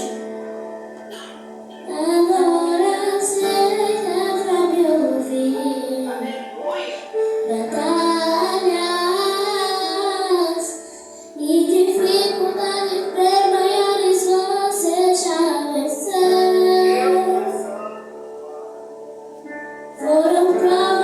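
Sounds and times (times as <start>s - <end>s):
keyboard chords: 0.0s - 21.0s
high solo voice singing: 1.9s - 18.6s.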